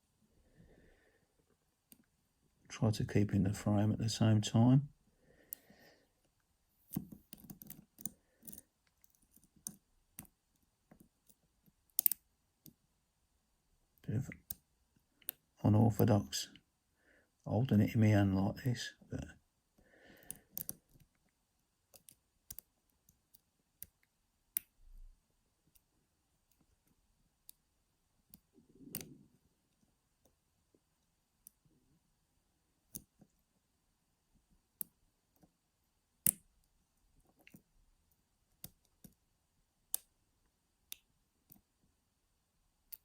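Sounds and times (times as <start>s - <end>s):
lock pick clicking: 6.9s - 10.3s, 11.2s - 12.2s, 20.2s - 21.1s.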